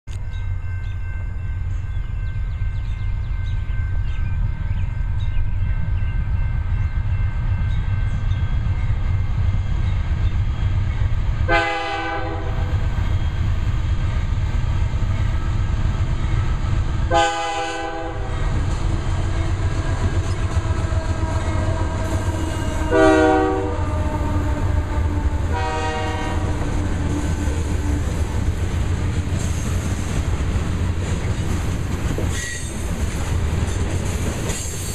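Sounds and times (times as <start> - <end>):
diesel locomotive engine rumble: 0.1 - 34.9
locomotive air horn blasts: 11.5 - 12.7, 17.1 - 18.4, 20.0 - 27.6.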